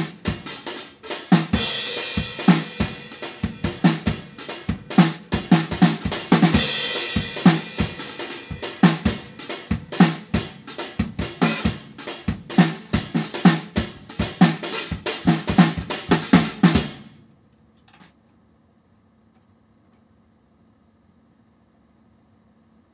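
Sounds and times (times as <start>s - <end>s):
cymbal crash: 0.0s - 17.2s
rock drum kit playing: 0.0s - 17.2s.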